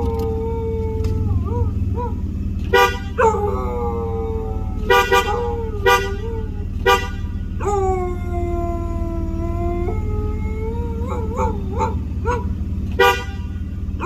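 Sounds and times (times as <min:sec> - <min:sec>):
dog howling: 0:00.0 - 0:02.3, 0:03.1 - 0:06.8, 0:07.6 - 0:12.6
steady low hum: 0:00.0 - 0:14.0
car horn toots: 0:02.3 - 0:03.6, 0:04.6 - 0:07.7, 0:12.0 - 0:14.0.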